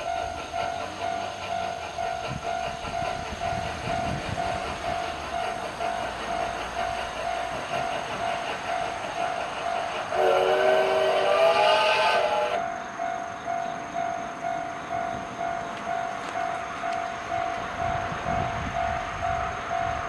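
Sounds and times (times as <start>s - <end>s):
level-crossing warning bell ringing: 0.0s - 20.0s
train horn chord: 10.1s - 12.7s.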